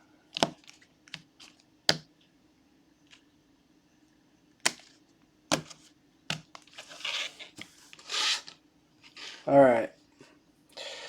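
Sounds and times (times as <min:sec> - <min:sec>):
faint steady hum: 0:00.0 - 0:11.0.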